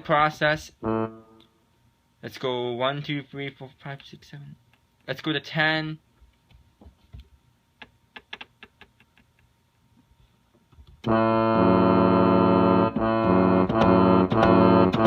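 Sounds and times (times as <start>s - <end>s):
keyboard chord imitating ship horn: 0.7s - 1.5s, 11.0s - 15.0s.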